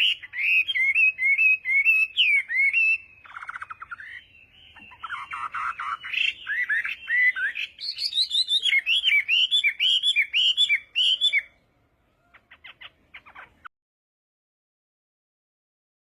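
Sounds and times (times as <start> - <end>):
bird chirping: 0.0 - 13.7.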